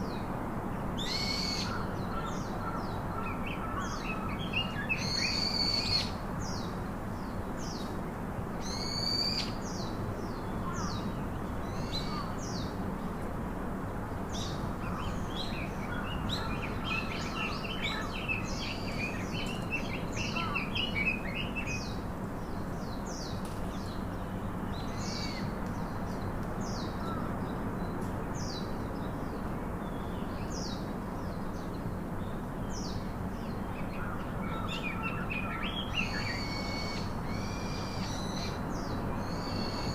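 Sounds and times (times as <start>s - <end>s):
birds chirping and singing: 14.4s - 22.0s, 32.8s - 39.9s.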